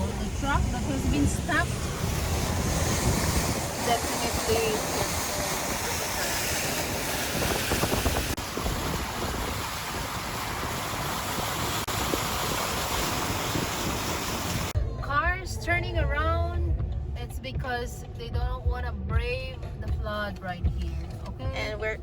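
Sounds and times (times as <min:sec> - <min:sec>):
heavy rain downpour: 0:00.0 - 0:14.8
wind buffeting microphone: 0:00.0 - 0:14.8.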